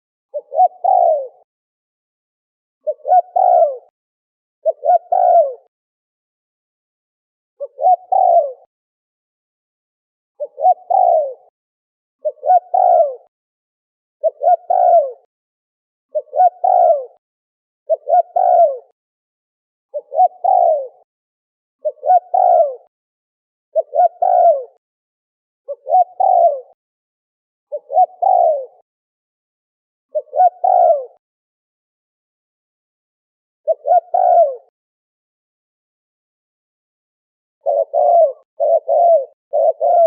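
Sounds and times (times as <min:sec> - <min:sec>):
dove cooing: 0:00.3 - 0:01.5, 0:02.8 - 0:03.9, 0:04.6 - 0:05.7, 0:07.6 - 0:08.7, 0:10.4 - 0:11.5, 0:12.2 - 0:13.3, 0:14.2 - 0:15.3, 0:16.1 - 0:17.2, 0:17.9 - 0:19.0, 0:19.9 - 0:21.1, 0:21.8 - 0:22.9, 0:23.8 - 0:24.8, 0:25.7 - 0:26.8, 0:27.7 - 0:28.8, 0:30.1 - 0:31.2, 0:33.6 - 0:34.7, 0:37.6 - 0:40.0.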